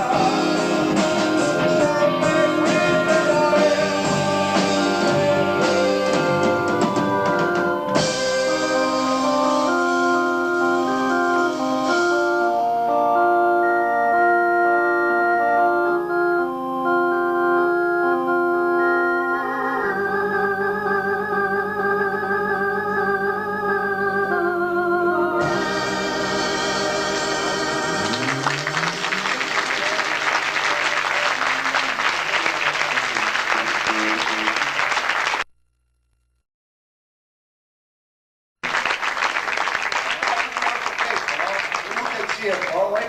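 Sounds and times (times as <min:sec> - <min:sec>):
prog rock organ and keyboard chords: 0:00.0 - 0:34.5
low sliding note: 0:25.5 - 0:29.8
audience applause: 0:27.1 - 0:35.5, 0:38.6 - 0:43.0.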